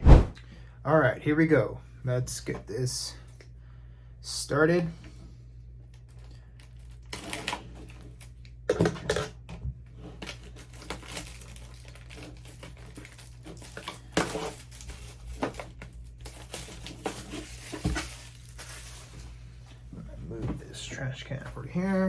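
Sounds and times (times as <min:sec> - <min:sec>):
shrink wrap crinkling and tearing: 0:05.9 - 0:08.7, 0:10.1 - 0:19.5.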